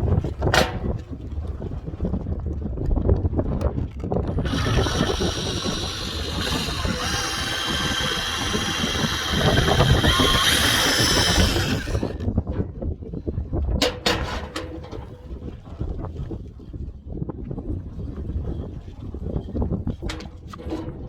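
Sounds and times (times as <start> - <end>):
wind buffeting microphone: 0.0 - 21.0
power tool motor whining: 4.3 - 12.2.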